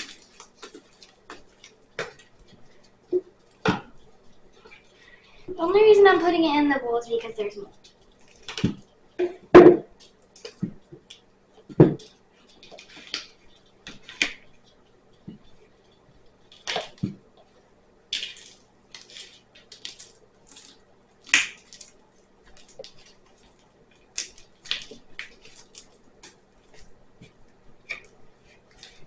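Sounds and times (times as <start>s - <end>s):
slime squelching and crackling: 0.0s - 11.3s, 12.0s - 29.0s
slime snapping: 21.2s - 21.9s.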